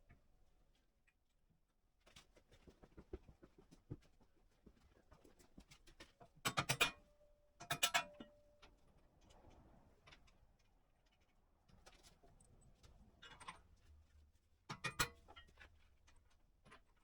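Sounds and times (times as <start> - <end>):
clicks and knocks on metal parts: 6.5 - 8.4.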